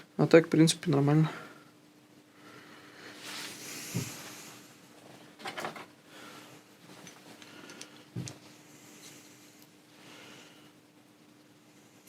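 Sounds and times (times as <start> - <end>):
faint steady hum: 0.0 - 12.0
soft rustle: 3.1 - 5.3.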